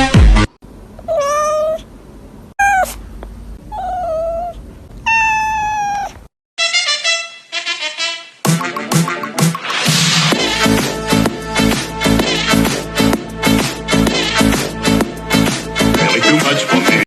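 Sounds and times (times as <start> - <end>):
cat meowing: 1.1 - 1.9, 2.6 - 3.0, 3.7 - 6.3.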